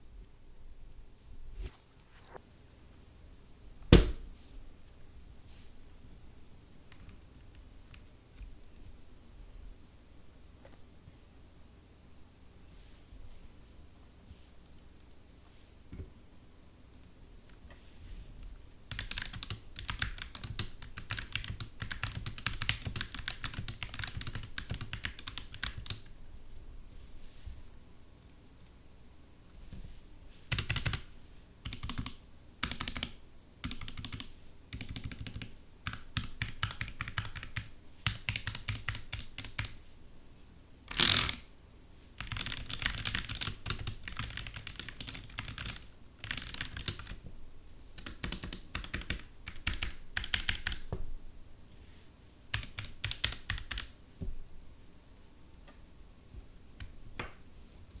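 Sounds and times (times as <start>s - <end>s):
mechanical keyboard typing: 18.9s - 26.1s, 30.5s - 31.0s, 31.6s - 39.8s, 40.9s - 41.4s, 42.2s - 47.2s, 48.0s - 50.9s, 52.5s - 53.9s.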